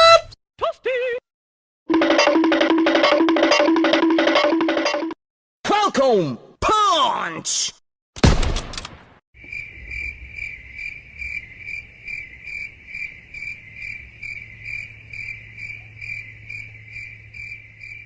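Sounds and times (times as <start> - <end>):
crickets chirping: 9.4 - 18.0.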